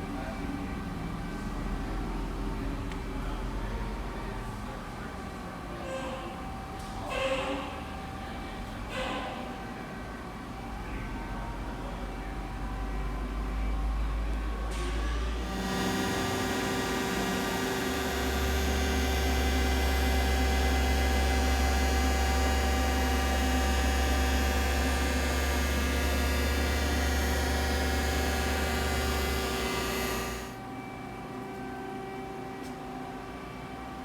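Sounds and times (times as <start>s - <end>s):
lathe humming with whine tones: 15.0s - 34.0s.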